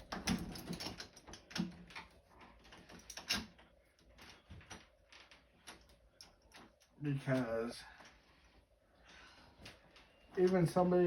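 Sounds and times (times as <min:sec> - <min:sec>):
door lock clicks and scrapes: 0:00.0 - 0:06.8.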